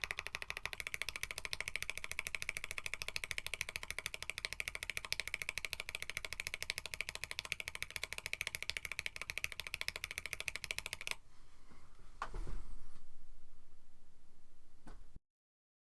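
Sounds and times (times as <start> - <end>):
typing on mechanical keyboard: 0.0 - 11.2
low thump: 12.2 - 15.2.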